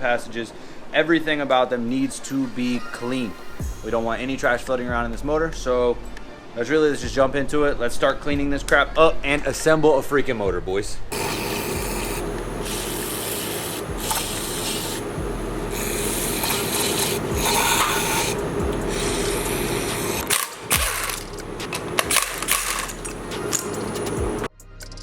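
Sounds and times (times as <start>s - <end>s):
steady low hum: 2.3s - 6.3s, 11.1s - 24.5s
scrubbing engine parts: 11.1s - 24.5s.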